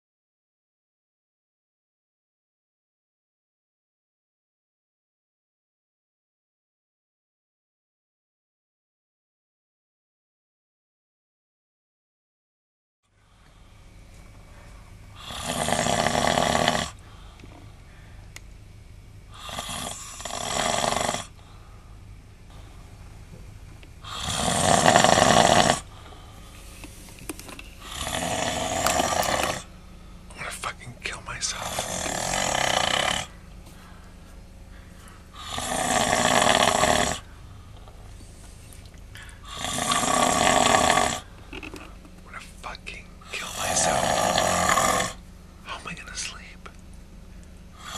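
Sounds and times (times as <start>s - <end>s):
steady low hum: 13.1s - 47.9s
man snoring: 15.2s - 17.0s, 19.3s - 21.4s, 24.0s - 26.5s, 27.8s - 29.7s, 31.1s - 33.4s, 35.3s - 37.3s, 39.4s - 41.7s, 43.2s - 45.2s.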